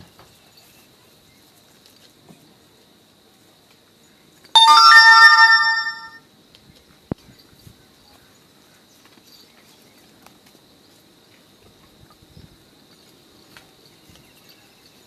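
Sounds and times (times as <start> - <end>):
loud bell-like chime: 4.6 - 6.2.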